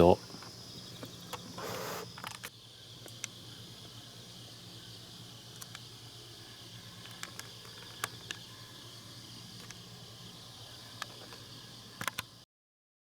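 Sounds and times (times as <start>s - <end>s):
faint hiss: 0.0s - 12.4s
sharp light clicks: 2.1s - 3.4s, 5.5s - 5.9s, 7.0s - 8.4s, 12.0s - 12.3s.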